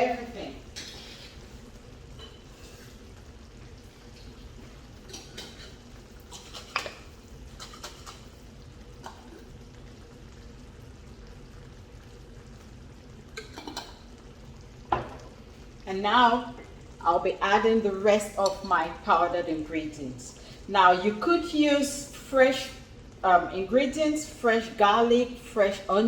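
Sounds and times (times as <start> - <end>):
low steady hum: 0.0 - 26.0
stirring: 0.7 - 9.6.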